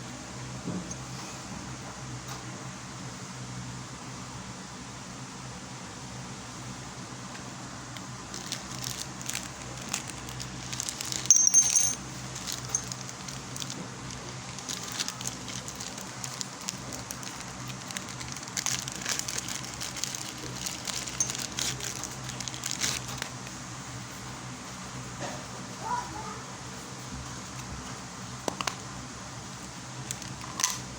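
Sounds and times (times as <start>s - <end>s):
packaging crinkling: 8.0s - 23.6s.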